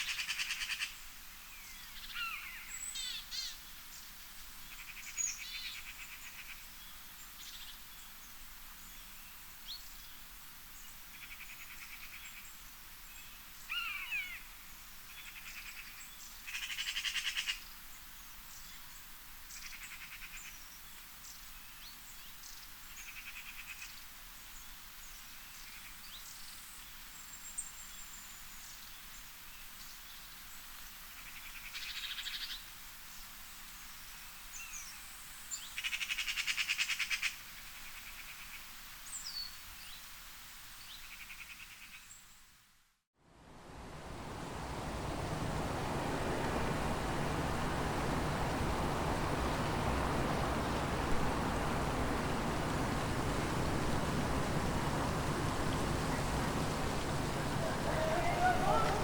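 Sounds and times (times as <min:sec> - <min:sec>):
wind in trees: 0:37.5 - 0:59.0.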